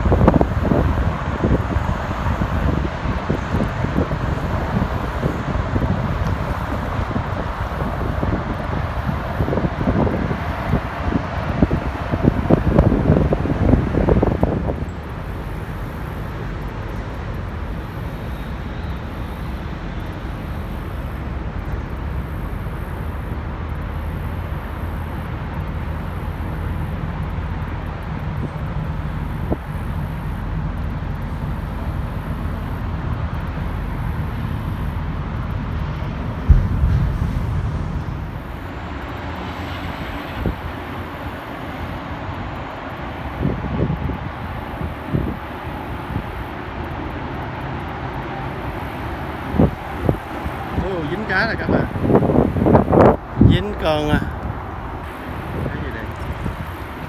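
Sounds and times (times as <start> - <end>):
low engine rumble: 0.0 - 41.3
sharp bump: 36.4 - 39.9.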